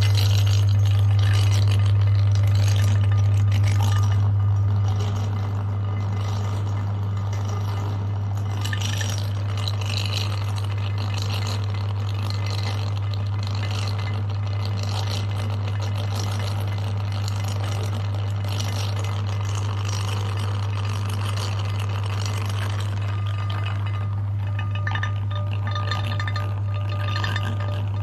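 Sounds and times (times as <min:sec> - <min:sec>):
food crunching in grinder: 0:00.0 - 0:28.0
meat grinder motor hum: 0:00.0 - 0:28.0.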